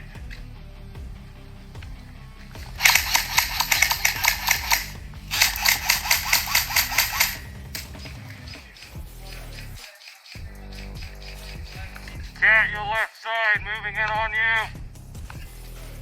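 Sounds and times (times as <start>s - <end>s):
airsoft rifles full-auto firing: 2.6s - 9.0s.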